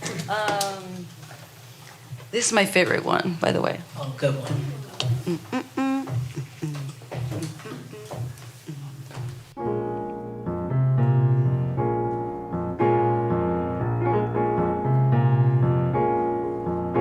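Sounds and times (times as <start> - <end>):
piano chords: 9.5 - 17.0.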